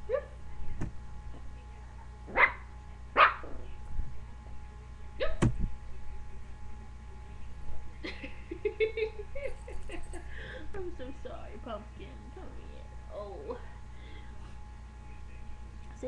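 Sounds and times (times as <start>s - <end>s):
steady low hum: 0.0s - 16.0s
puppy barking: 2.3s - 3.6s.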